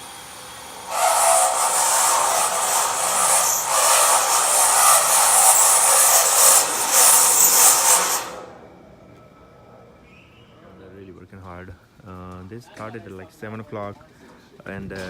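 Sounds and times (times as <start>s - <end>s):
loud power tool running: 0.0s - 8.7s.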